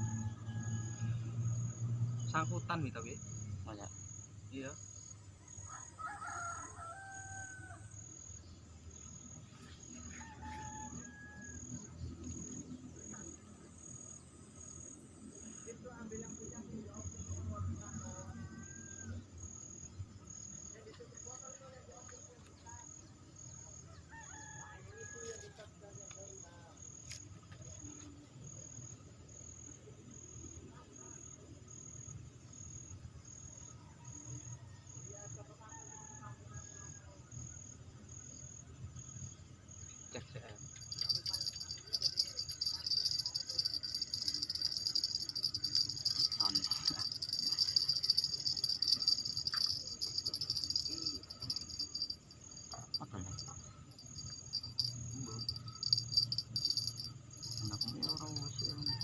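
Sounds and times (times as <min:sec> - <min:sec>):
rooster crowing: 0:00.0 - 0:01.6, 0:05.5 - 0:08.0, 0:10.1 - 0:11.9, 0:18.0 - 0:19.2, 0:24.0 - 0:25.7, 0:41.2 - 0:52.6, 0:54.6 - 0:59.0
insects chirping: 0:00.0 - 0:59.0
low steady rumble: 0:41.0 - 0:58.9.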